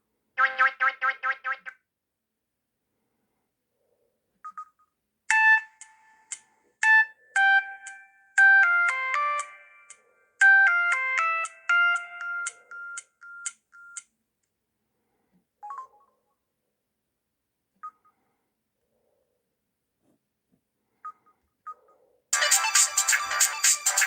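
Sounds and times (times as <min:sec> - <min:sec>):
polyphonic ringtone melody: 0:05.3 - 0:13.5.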